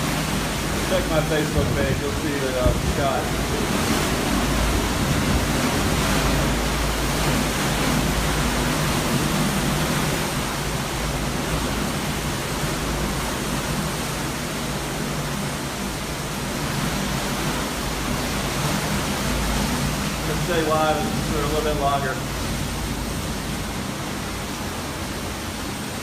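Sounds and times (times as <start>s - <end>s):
strong wind rushing: 0.0s - 13.1s
wind rumble on microphone: 0.0s - 26.0s.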